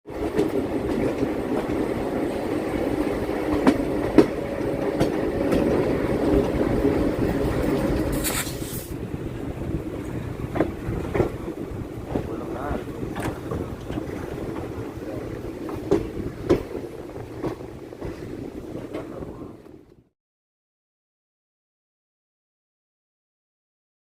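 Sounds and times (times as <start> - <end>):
electric train rumbling: 0.1 - 20.1
brief hiss: 8.1 - 9.0.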